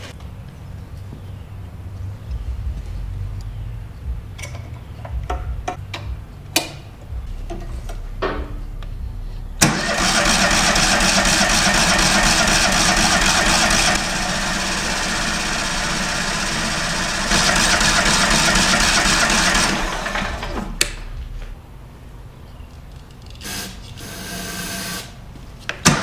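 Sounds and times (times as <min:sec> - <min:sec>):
engine cranking without firing: 0:09.6 - 0:21.4.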